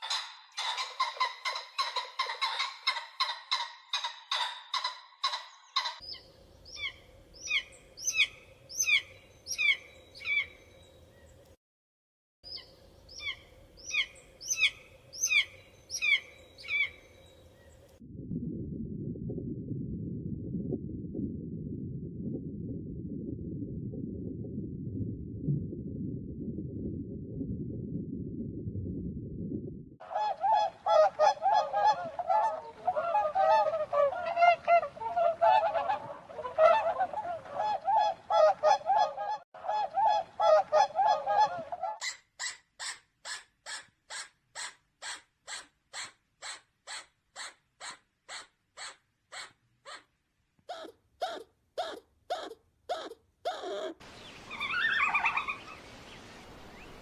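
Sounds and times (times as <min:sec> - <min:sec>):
low rumble: 0:17.4 - 0:30.0
geese honking: 0:30.2 - 0:42.0.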